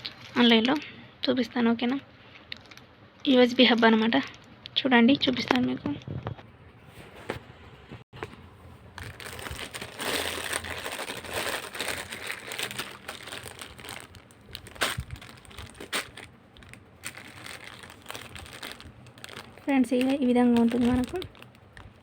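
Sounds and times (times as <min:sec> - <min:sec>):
packaging crinkling: 0:08.9 - 0:22.0.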